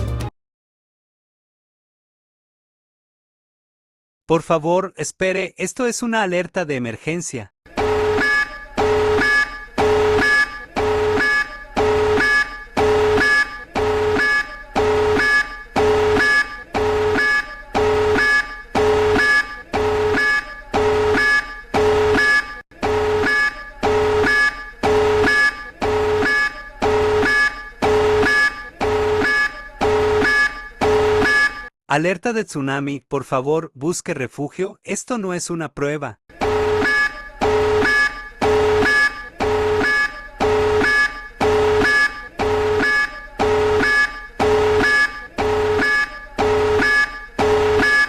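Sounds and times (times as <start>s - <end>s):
harsh buzzy alert beeps: 7.7s - 31.7s, 36.3s - 48.0s.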